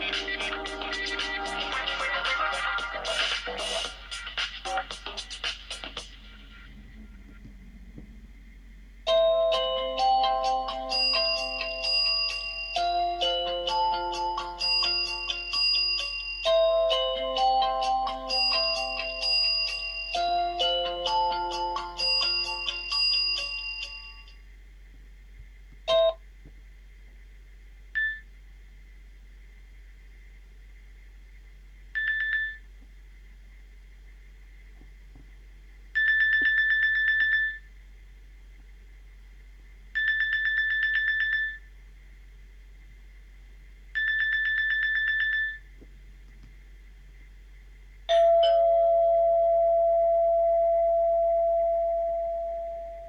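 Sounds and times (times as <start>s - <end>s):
loud chime: 9.1s - 24.4s, 48.1s - 53.0s.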